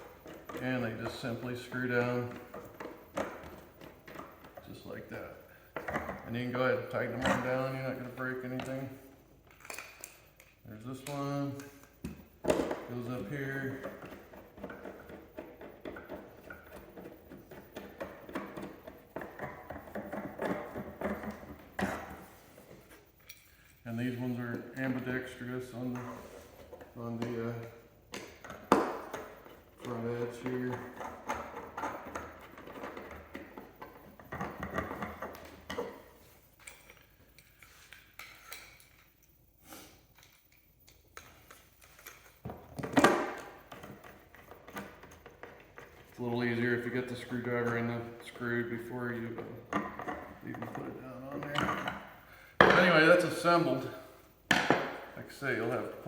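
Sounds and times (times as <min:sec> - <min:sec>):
clicks taps and scraping: 0:00.0 - 0:39.4, 0:40.0 - 0:56.0
screwdriver scraping and clinking: 0:22.7 - 0:23.8, 0:36.6 - 0:39.4.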